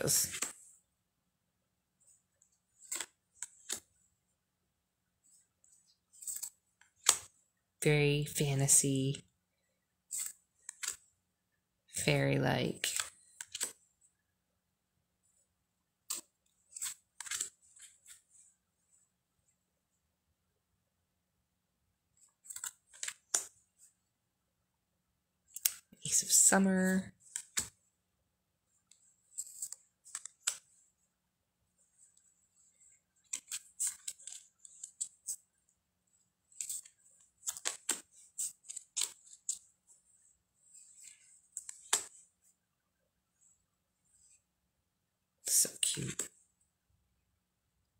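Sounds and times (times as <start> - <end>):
cards sliding and flicking: 0.2 - 0.6, 2.8 - 3.9, 6.2 - 7.4, 10.1 - 11.0, 12.9 - 13.8, 16.0 - 18.3, 22.4 - 23.6, 27.3 - 27.8, 29.4 - 30.8, 33.2 - 35.4, 36.6 - 39.6, 40.8 - 42.2.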